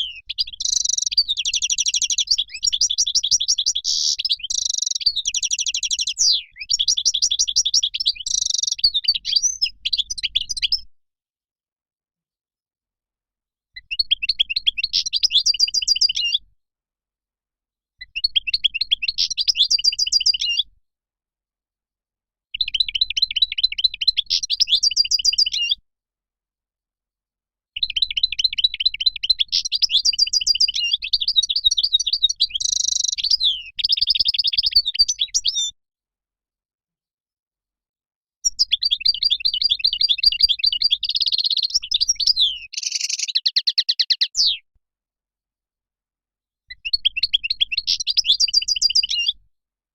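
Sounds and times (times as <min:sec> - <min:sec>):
finch twittering song: 0:00.0 - 0:10.9, 0:13.7 - 0:16.4, 0:18.0 - 0:20.7, 0:22.5 - 0:25.8, 0:27.8 - 0:35.8, 0:38.4 - 0:44.6, 0:46.7 - 0:49.4.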